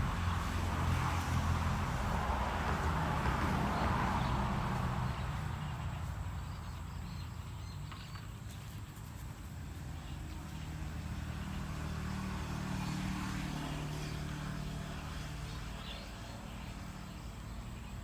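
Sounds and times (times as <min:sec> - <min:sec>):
low engine-like hum: 0:00.0 - 0:18.0.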